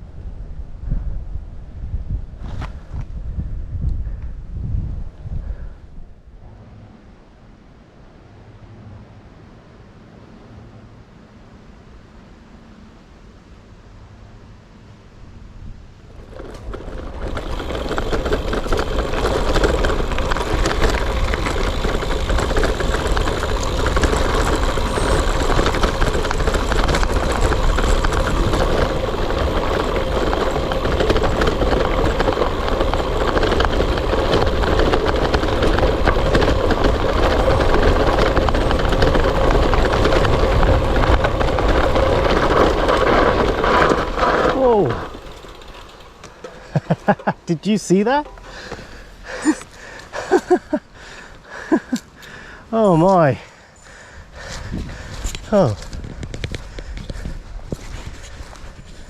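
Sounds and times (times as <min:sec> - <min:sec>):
bike rattling: 0:16.0 - 0:59.0
tyres rumbling on gravel: 0:16.0 - 0:59.0.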